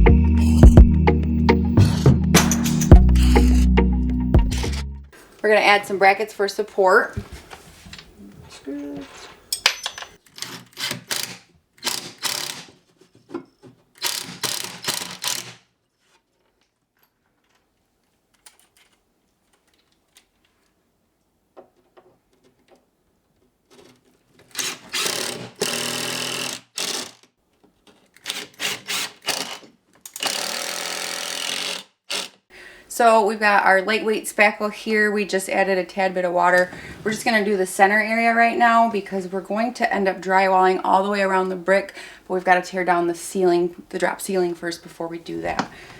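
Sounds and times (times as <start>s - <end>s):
power driver driving screws: 2.4s - 3.6s, 9.6s - 12.8s, 14.0s - 15.6s, 24.5s - 27.2s, 28.2s - 32.4s.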